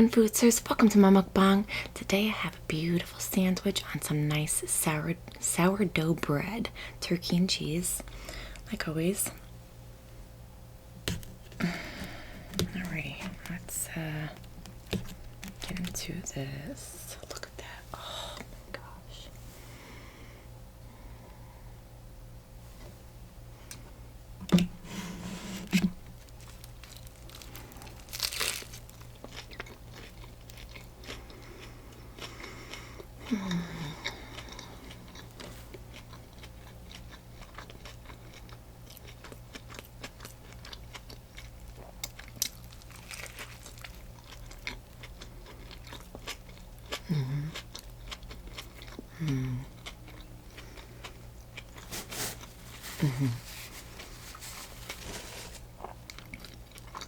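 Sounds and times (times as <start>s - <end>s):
biting and crunching bread crust: 11.1s - 16.2s, 26.0s - 57.0s
chewing with wet mouth clicks: 29.0s - 33.1s, 34.0s - 51.9s, 55.8s - 57.0s.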